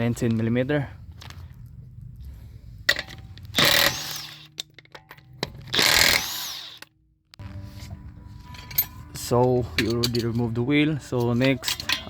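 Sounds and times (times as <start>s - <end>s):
impact wrench hammering: 2.9s - 6.9s.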